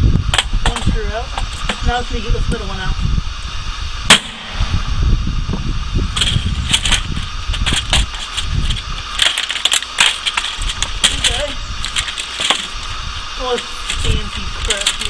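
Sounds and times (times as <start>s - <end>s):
handling knocks and rattles: 6.2s - 12.9s, 13.5s - 15.0s.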